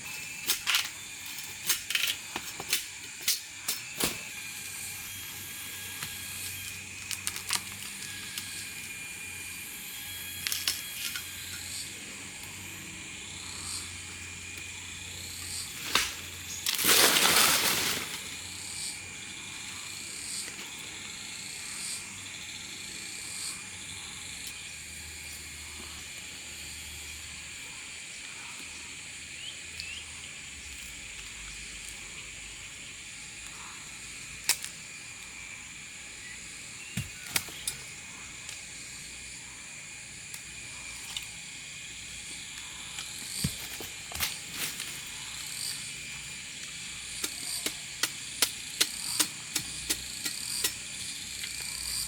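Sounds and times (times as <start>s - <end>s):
loud rustling rush: 16.0s - 18.4s.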